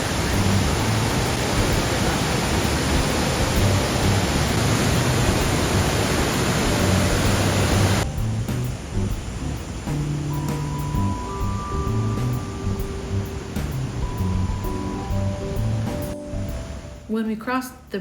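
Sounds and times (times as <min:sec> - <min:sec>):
waterfall roaring: 0:00.0 - 0:17.0.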